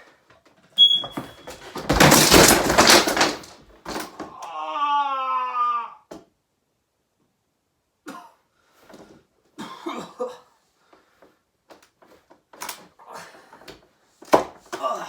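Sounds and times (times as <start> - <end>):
man clearing his throat: 8.1 - 8.4, 9.6 - 10.5
man coughing: 9.6 - 10.5.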